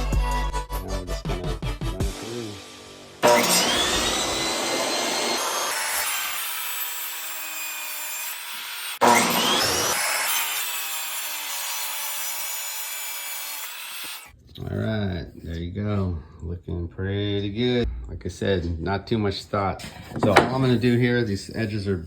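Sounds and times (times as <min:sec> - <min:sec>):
power tool cutting wood: 0:03.2 - 0:14.3.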